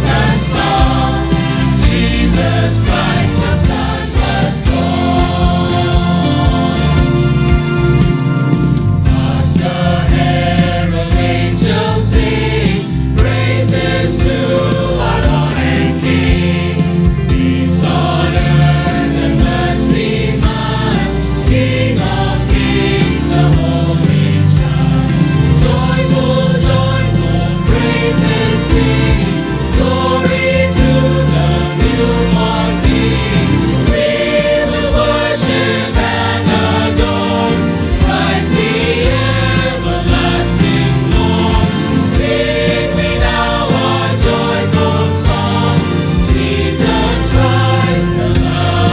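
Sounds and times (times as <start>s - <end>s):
choir singing: 0.0s - 48.9s
instrumental bass line: 0.0s - 48.9s.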